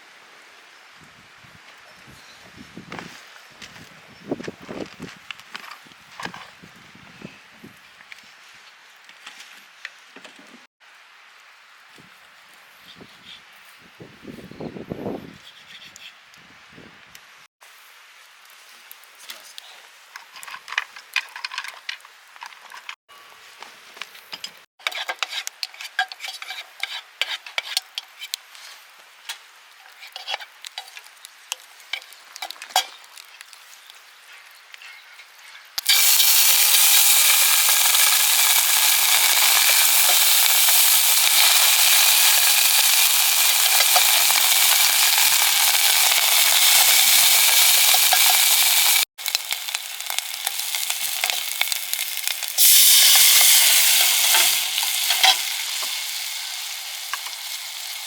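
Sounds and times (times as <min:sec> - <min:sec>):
food sizzling in a hot pan: 0:24.8 - 0:33.6, 0:35.8 - 0:58.0
cooking utensils clicking: 0:52.6 - 0:56.1.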